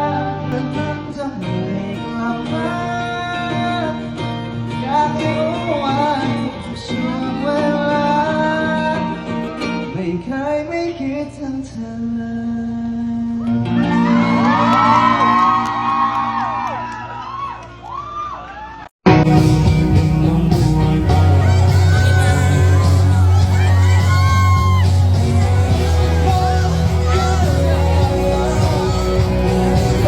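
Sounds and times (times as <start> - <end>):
acoustic guitar playing: 0.0 - 10.3, 19.0 - 30.0
person singing: 0.0 - 15.3, 19.1 - 30.0.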